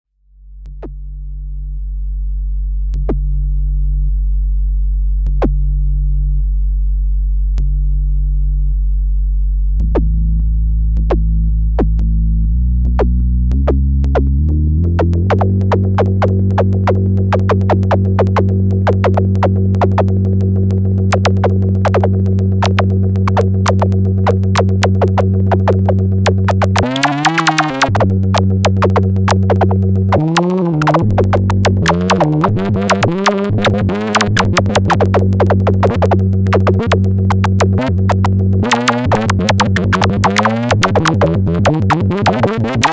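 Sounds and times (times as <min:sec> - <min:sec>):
synthesizer drone: 0:12.4 - 0:42.9
wobbling pitch sweep: 0:12.8 - 0:42.9
sharp electronic clicks: 0:15.3 - 0:42.9.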